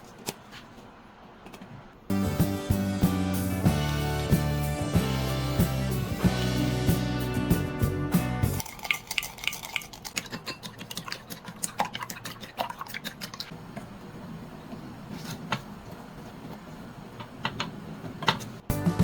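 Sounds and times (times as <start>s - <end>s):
utensils clinking against dishes: 8.6s - 13.5s.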